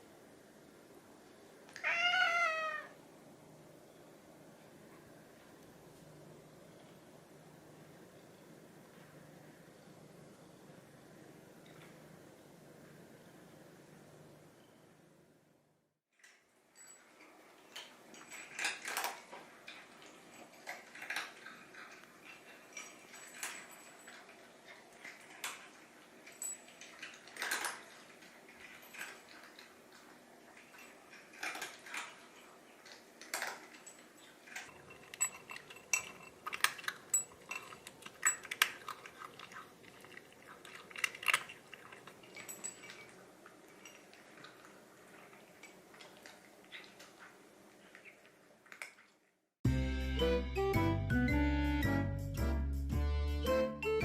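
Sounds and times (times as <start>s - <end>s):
food dish clinking and rattling: 16.8s - 47.2s.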